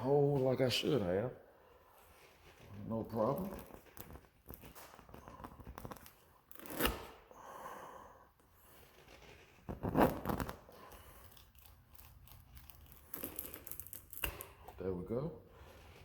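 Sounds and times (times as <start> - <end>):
rubber scraping and creaking: 2.1 - 7.2, 8.6 - 16.0.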